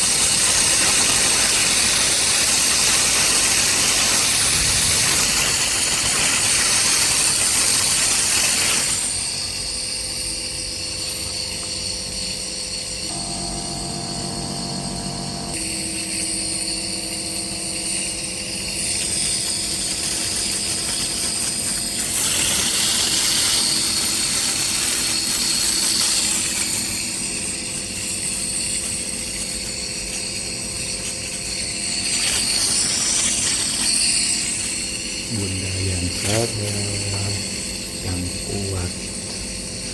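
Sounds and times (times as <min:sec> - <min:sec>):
nebulizer compressor hissing: 0:00.0 - 0:39.9
low-pitched hum: 0:13.1 - 0:15.6.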